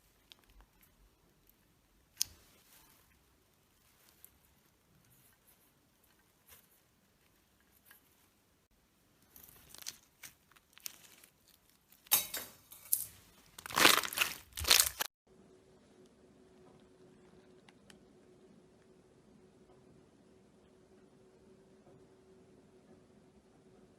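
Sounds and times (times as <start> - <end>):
slime crackling and squishing: 0.0 - 12.1, 13.2 - 15.1.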